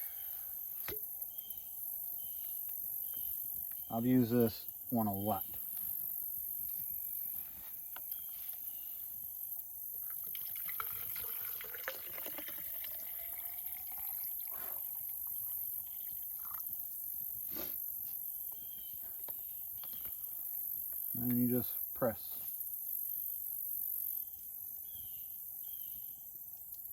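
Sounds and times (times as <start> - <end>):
crickets chirping: 0.0 - 26.9
water pouring into cup: 10.0 - 16.1.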